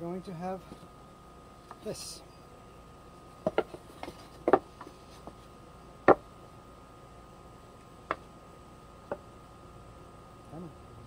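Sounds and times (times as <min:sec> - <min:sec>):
wooden boards knocking: 0:03.4 - 0:04.7.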